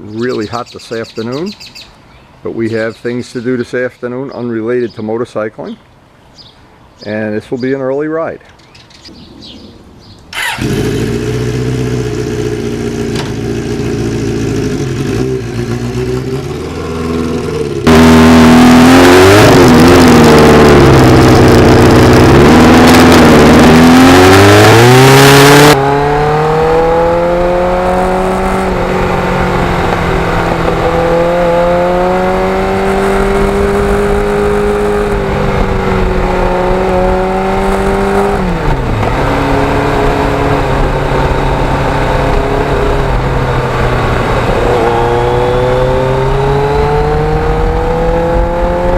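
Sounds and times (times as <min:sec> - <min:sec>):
motorcycle engine revving: 0:10.3 - 0:48.9.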